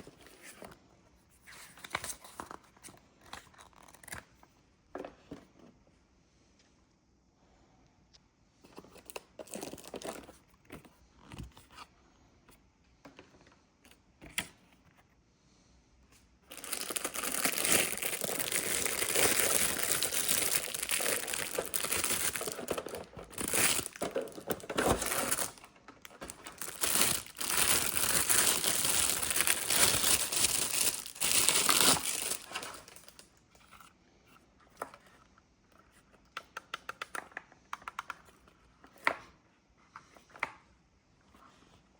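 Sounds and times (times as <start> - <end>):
packaging crinkling and tearing: 9.0 - 10.4, 16.5 - 33.3.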